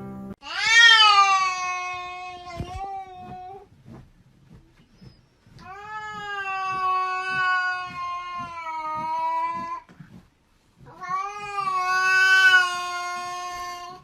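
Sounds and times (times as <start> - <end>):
cat yowling: 0.4 - 3.6, 5.7 - 9.8, 10.9 - 14.0.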